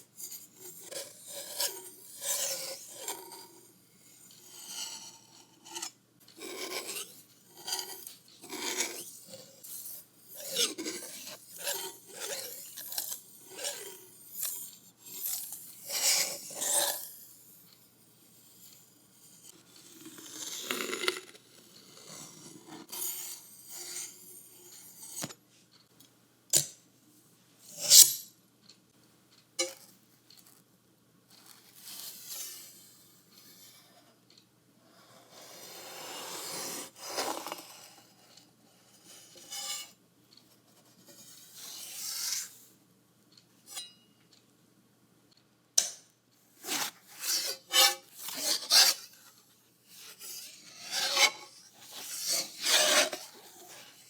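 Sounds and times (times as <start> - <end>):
painting tools scraping on board: 0.2 - 17.1, 35.0 - 40.0, 46.6 - 54.0.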